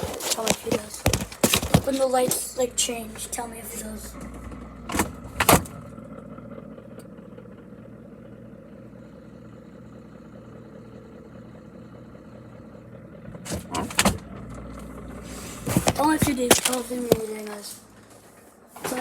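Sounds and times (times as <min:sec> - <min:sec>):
knocks and thuds: 0:00.0 - 0:02.5, 0:15.3 - 0:17.6
refrigerator low hum: 0:00.0 - 0:19.0
refrigerator door shutting: 0:04.0 - 0:06.0, 0:13.2 - 0:19.0.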